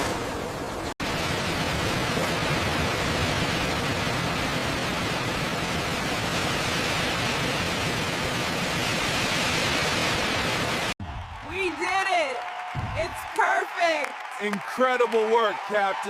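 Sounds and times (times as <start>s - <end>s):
steady rushing noise: 0.0s - 11.6s.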